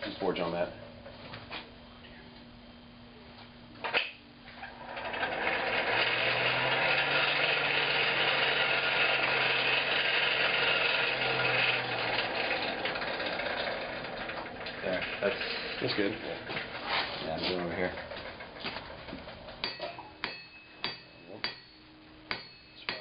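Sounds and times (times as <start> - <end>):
small electric motor whirring: 4.7 - 16.9.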